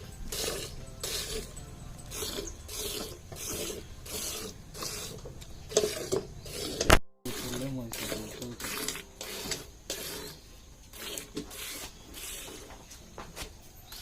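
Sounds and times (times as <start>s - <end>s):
milk squirting into a pail: 2.1s - 12.7s.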